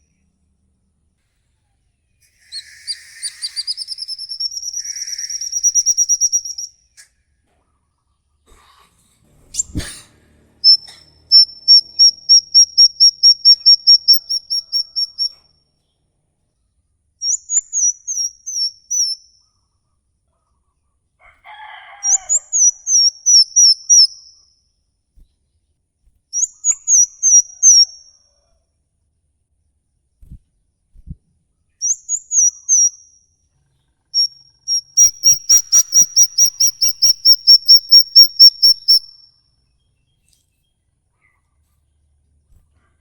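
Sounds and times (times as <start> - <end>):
low rough bird call: 2.2 - 7.0
songbird repeated giggling call: 2.5 - 6.7, 10.7 - 15.4, 34.2 - 39.1.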